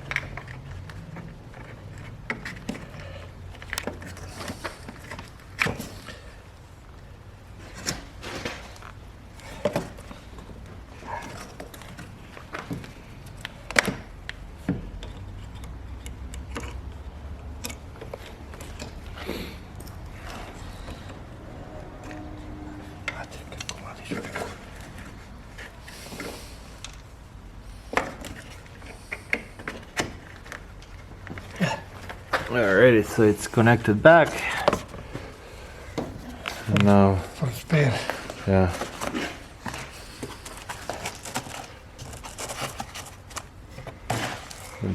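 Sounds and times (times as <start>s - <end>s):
hands clicking plastic parts: 9.6s - 21.2s.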